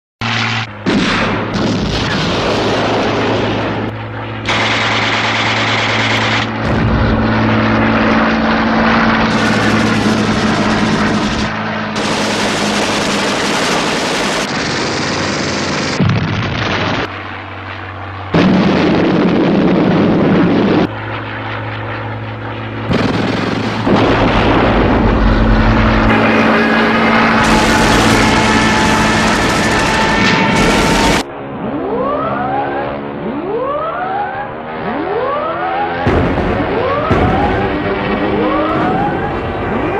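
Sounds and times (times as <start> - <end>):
aircraft engines: 0.2 - 39.9
steady low drone: 0.2 - 39.9
gunfire: 0.8 - 3.4, 4.4 - 7.0, 12.0 - 14.6, 22.9 - 24.9, 36.0 - 38.1
explosions: 0.8 - 17.1, 18.3 - 20.9, 22.9 - 31.3, 36.0 - 39.6.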